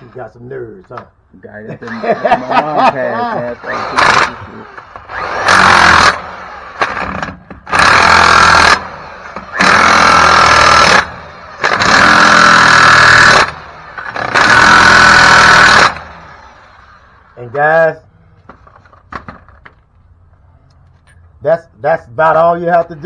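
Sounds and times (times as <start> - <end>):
impact wrench bursts: 3.4 - 17.4.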